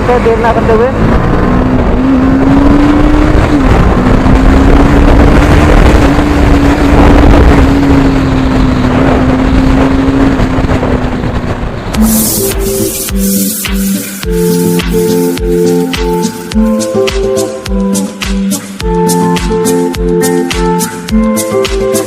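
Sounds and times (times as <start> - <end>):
wind rumble on microphone: 0.0 - 21.9
motorcycle engine cruising: 0.0 - 22.0
music: 12.0 - 22.0.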